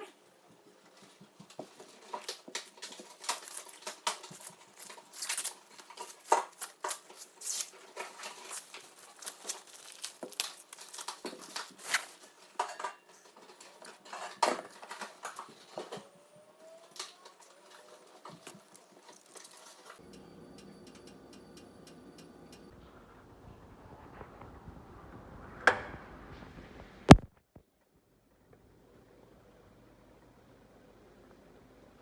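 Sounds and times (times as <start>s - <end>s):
utensils and dishes clinking: 1.0s - 16.1s, 17.0s - 22.7s.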